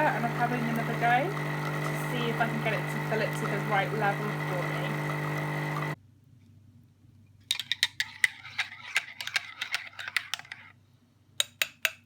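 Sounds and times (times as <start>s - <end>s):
coffee machine spout spluttering: 0.0s - 6.0s.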